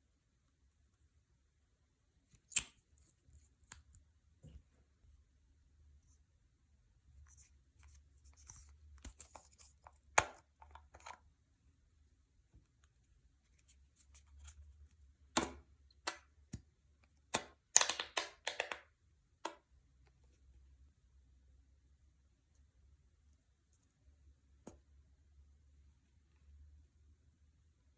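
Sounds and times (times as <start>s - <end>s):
hands tapping and clicking objects: 15.3s - 16.7s, 17.3s - 19.8s, 24.6s - 25.0s.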